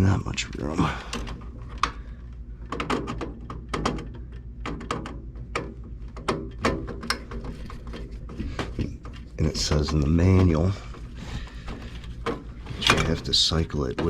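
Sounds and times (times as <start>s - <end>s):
low steady hum: 0.0s - 14.0s
tools clicking and tapping: 2.6s - 10.7s.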